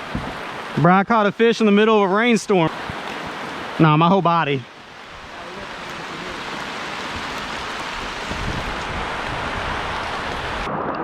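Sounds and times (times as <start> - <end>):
heavy rain falling: 1.6 - 10.7
raindrop ticks: 5.2 - 9.4.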